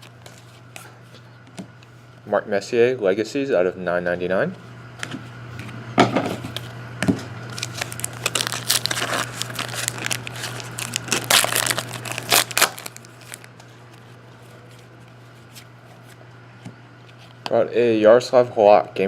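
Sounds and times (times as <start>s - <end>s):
steady low hum: 0.0s - 19.0s
wrapper tearing and crinkling: 7.5s - 14.9s.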